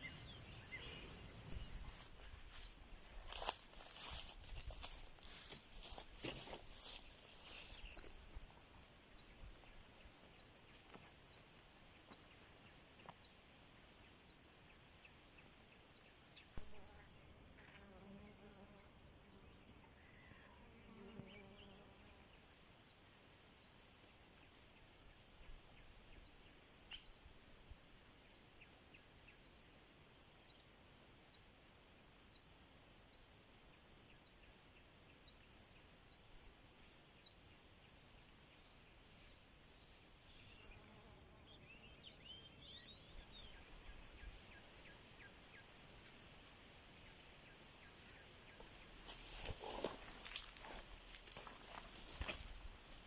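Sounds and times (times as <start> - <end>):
insects chirping: 0.0 - 16.6, 42.8 - 53.0
steady high hiss: 0.0 - 17.0, 21.9 - 40.9, 42.9 - 53.0.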